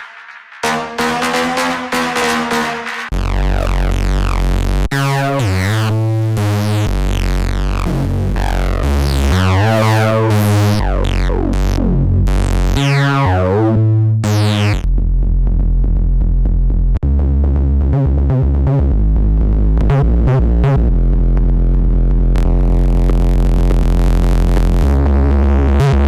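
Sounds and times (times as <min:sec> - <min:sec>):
synthesizer bass line: 0:00.0 - 0:14.8.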